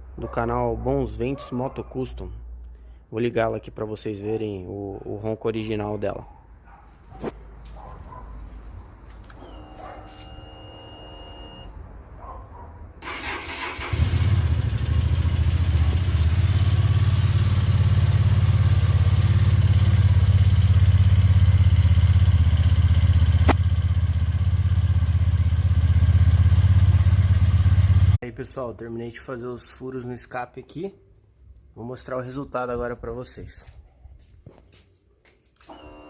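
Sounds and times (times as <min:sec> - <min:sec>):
motorcycle engine cranking: 0:13.0 - 0:15.7
motorcycle engine idling: 0:13.9 - 0:28.2.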